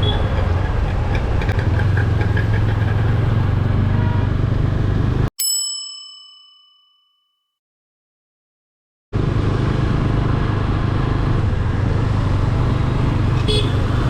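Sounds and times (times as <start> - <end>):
motorcycle riding: 0.0 - 5.3, 9.2 - 14.0
bell-like chime: 5.4 - 7.6.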